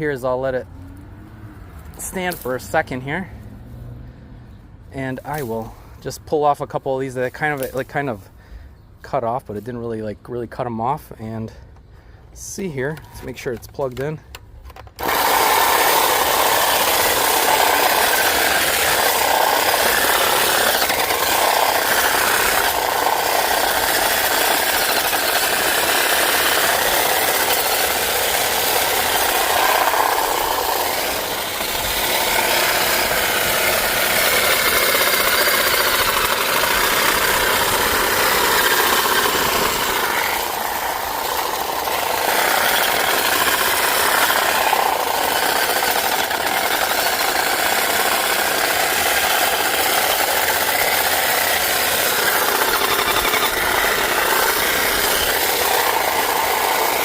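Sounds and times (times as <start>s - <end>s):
electric hedge trimmer cutting: 1.8s - 2.8s, 14.7s - 57.0s.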